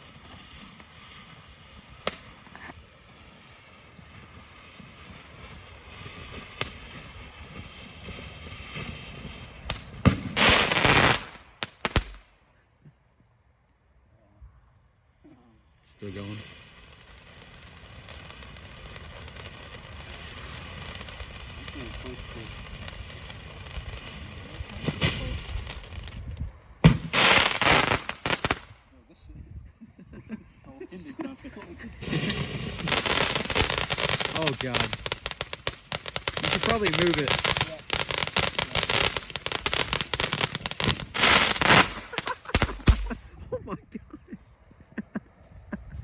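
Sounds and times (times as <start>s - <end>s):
firework fountain hissing: 0.0s - 12.2s, 15.8s - 28.7s, 31.0s - 43.2s
loud dense firework burst: 0.0s - 12.2s, 16.0s - 28.7s, 32.0s - 43.3s
firework cracks and bangs: 0.0s - 12.3s, 16.1s - 28.8s, 32.0s - 43.3s.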